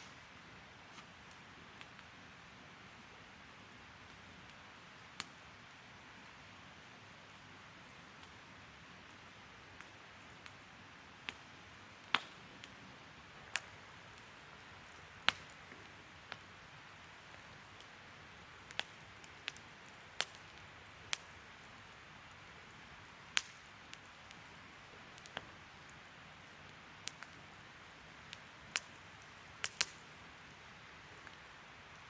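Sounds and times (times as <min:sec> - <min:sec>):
wood fire crackling: 0:00.0 - 0:32.0.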